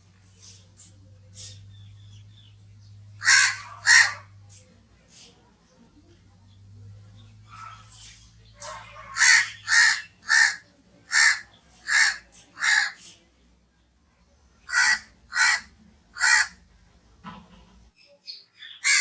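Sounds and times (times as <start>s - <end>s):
crow cawing: 3.2s - 4.5s, 8.6s - 13.0s, 14.7s - 16.6s.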